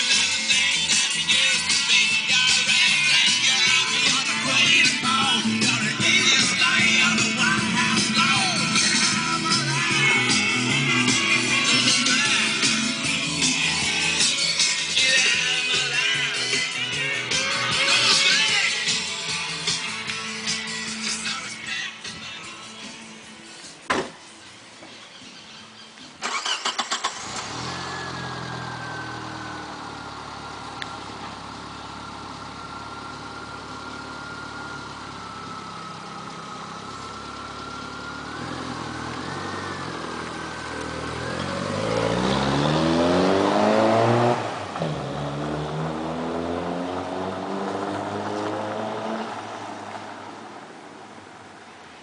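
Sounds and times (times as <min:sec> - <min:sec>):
car engine cranking and revving: 0:00.0 - 0:21.0, 0:26.2 - 0:51.7.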